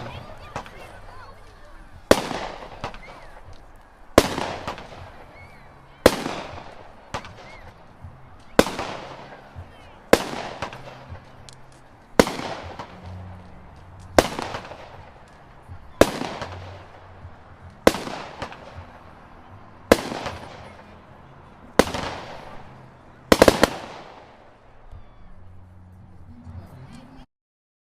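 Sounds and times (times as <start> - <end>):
firework bangs: 0.0 - 21.0, 21.7 - 24.9
firework crackle: 0.0 - 21.0, 21.7 - 25.0.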